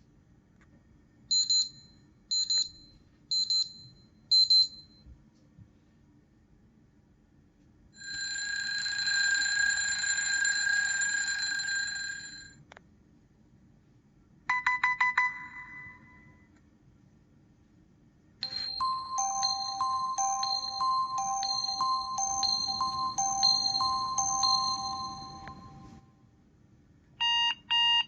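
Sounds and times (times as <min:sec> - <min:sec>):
electronic phone ring: 0:08.0 - 0:12.6, 0:18.4 - 0:26.0
melodic ringtone: 0:18.4 - 0:26.0
short beeps: 0:18.4 - 0:26.0.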